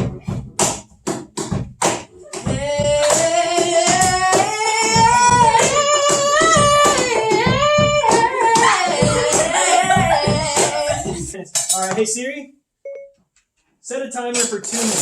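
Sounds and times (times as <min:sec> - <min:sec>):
song with sung melody and beat: 0:02.2 - 0:11.4.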